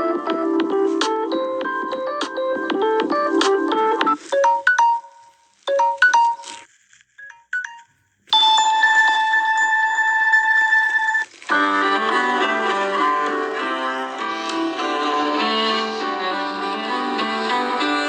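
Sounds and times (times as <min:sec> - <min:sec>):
piano-like ringtone tune: 0:00.0 - 0:06.6, 0:07.2 - 0:12.9
long steady chord of tones: 0:11.5 - 0:18.0.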